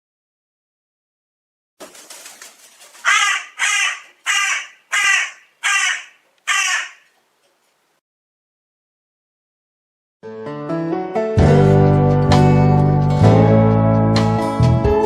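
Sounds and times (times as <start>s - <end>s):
crow cawing: 3.0s - 7.2s.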